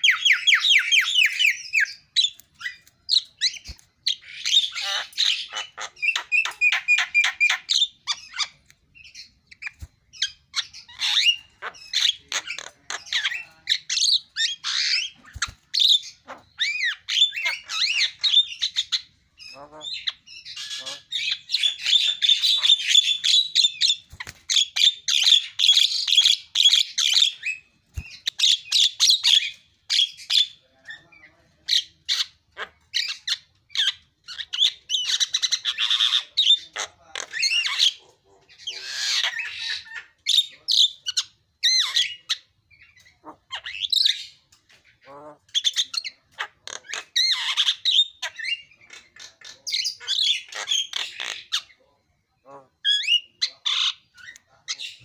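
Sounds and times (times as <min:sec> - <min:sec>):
myna bird singing: 0:00.0 - 0:55.0.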